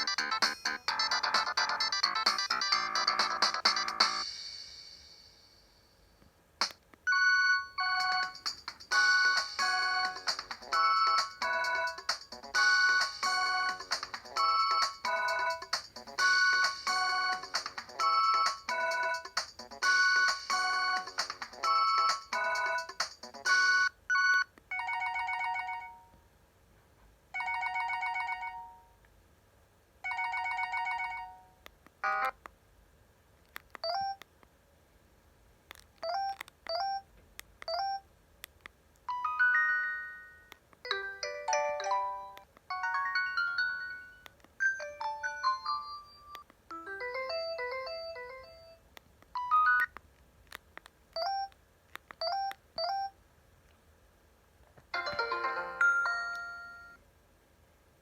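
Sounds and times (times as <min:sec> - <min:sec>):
electronic ringtone melody: 0:00.0 - 0:04.3, 0:07.1 - 0:26.0, 0:39.1 - 0:48.8, 0:55.0 - 0:57.0.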